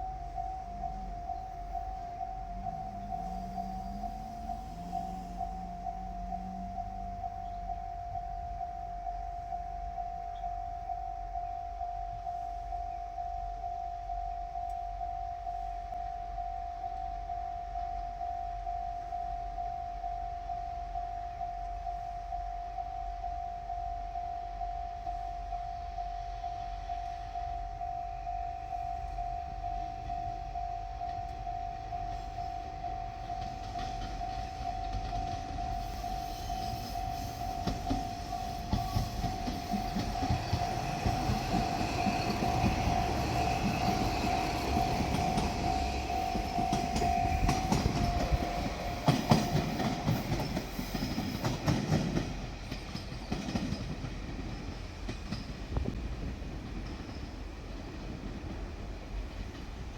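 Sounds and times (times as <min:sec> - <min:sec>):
level-crossing warning bell: 0:00.0 - 0:59.5
diesel train passing: 0:00.0 - 0:59.9
train wheels clacking on rails: 0:29.0 - 0:59.9.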